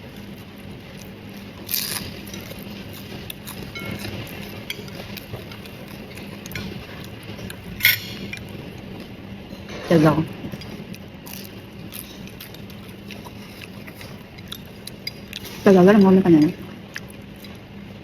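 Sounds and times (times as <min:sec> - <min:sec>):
soft chewing: 0:00.0 - 0:18.0
utensils clinking: 0:01.7 - 0:09.8, 0:10.4 - 0:16.6.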